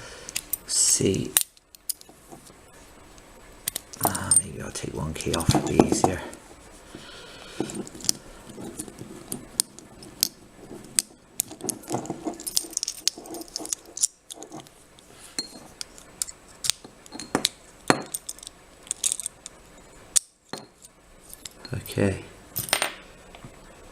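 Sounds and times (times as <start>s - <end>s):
keys jangling: 11.4s - 14.7s.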